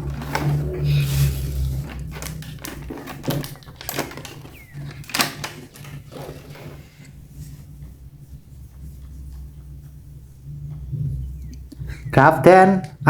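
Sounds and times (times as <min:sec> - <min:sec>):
plastic packaging crinkling: 0:00.0 - 0:07.2
loud plastic snaps: 0:01.6 - 0:06.8.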